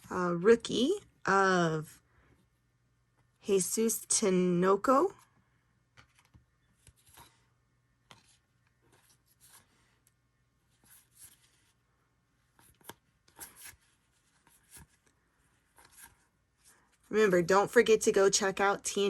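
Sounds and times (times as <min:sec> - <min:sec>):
trading cards sliding and clicking: 0:06.0 - 0:10.1, 0:10.8 - 0:11.6, 0:12.6 - 0:15.1, 0:15.7 - 0:16.3.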